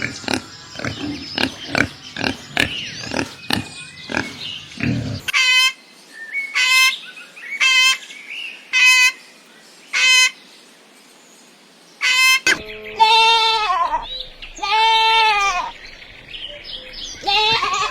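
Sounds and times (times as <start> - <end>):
bird calling: 0.0 - 5.8, 12.0 - 17.9
faint bird chirps: 12.1 - 17.9.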